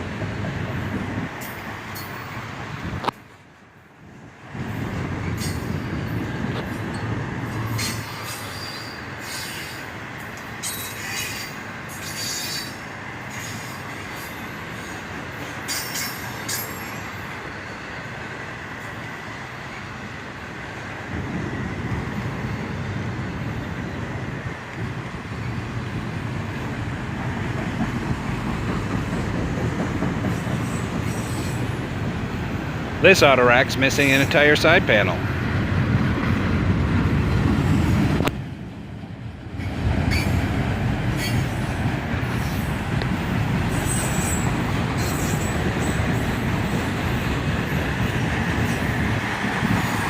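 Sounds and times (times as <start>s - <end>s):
freight train rumbling: 0.0s - 50.0s
train wheels squealing: 5.3s - 5.8s, 7.7s - 9.9s, 10.6s - 17.8s, 30.2s - 31.7s, 39.6s - 40.5s, 41.1s - 41.6s, 43.6s - 49.0s.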